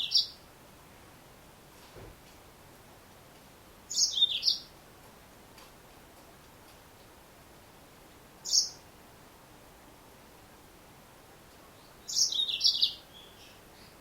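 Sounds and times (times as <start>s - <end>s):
finch chirping: 3.9s - 4.7s, 8.4s - 8.8s, 12.0s - 14.0s.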